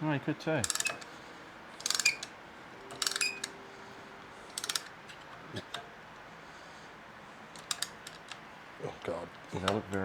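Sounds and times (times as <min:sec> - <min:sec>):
socket ratchet clicking: 0:00.6 - 0:01.1, 0:01.8 - 0:03.6, 0:04.5 - 0:05.0, 0:07.6 - 0:08.4.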